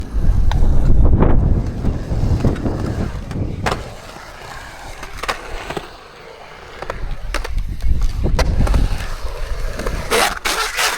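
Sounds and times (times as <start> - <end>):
skateboard wheels rumbling: 0.0 - 10.9
skateboard knocks: 0.4 - 4.2.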